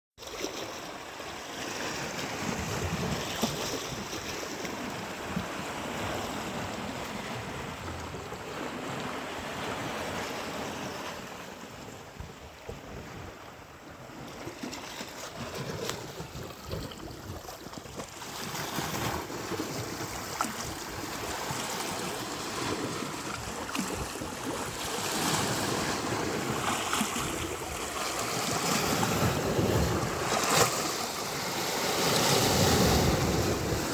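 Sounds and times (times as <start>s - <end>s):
ocean waves breaking: 12.6s - 33.9s
wind buffeting microphone: 19.0s - 31.4s, 32.4s - 33.9s.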